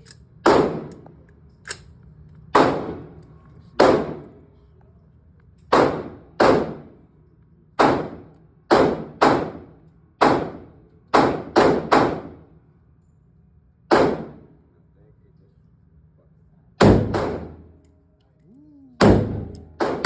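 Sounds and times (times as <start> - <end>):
rifle shots with echo: 0.4 - 1.0, 2.6 - 3.1, 3.8 - 4.3, 5.7 - 7.0, 7.8 - 12.4, 13.9 - 14.5, 16.8 - 17.7, 19.0 - 20.0.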